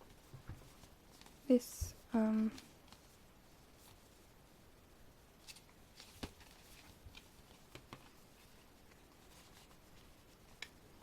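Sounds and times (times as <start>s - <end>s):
paper and card rustling: 5.4s - 10.7s.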